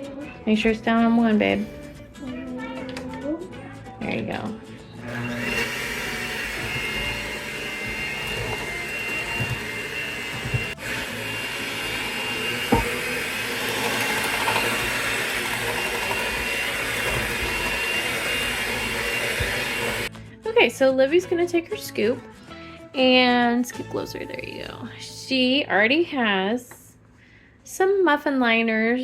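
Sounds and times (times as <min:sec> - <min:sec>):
electric mixer running: 0:05.0 - 0:20.1.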